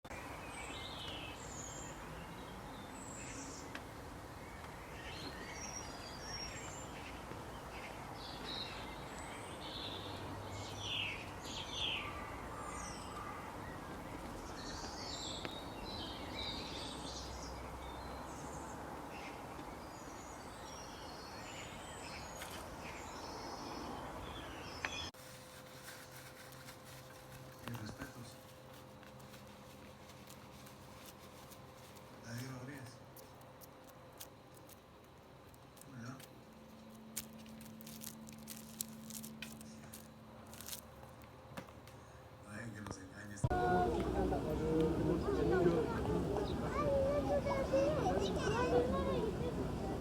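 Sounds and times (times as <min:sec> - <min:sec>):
outdoor background noise: 0:00.0 - 0:50.0
wild birds chirping: 0:00.1 - 0:25.2, 0:27.2 - 0:40.8, 0:41.8 - 0:50.0.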